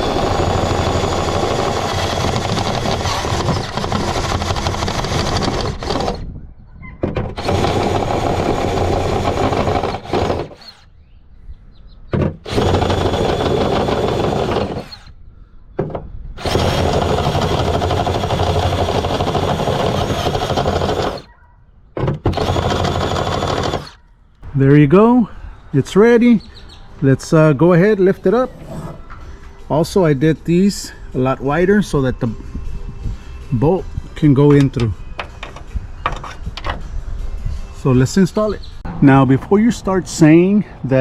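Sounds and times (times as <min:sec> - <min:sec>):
power drill running: 0:00.0 - 0:06.2, 0:07.4 - 0:10.9, 0:12.4 - 0:15.1, 0:16.4 - 0:21.3, 0:22.3 - 0:24.0.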